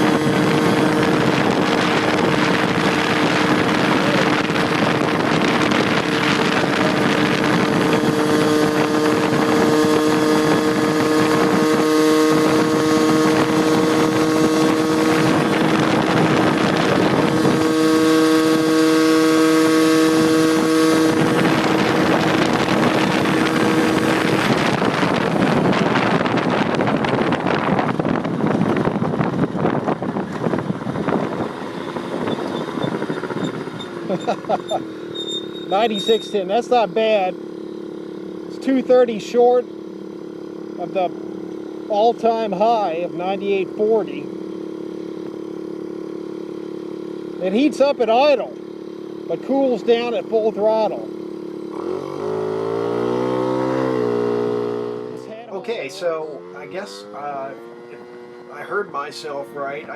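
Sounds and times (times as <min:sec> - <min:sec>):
wind rushing over microphone: 0:00.0 - 0:37.3
moped engine at full throttle: 0:00.0 - 0:59.9.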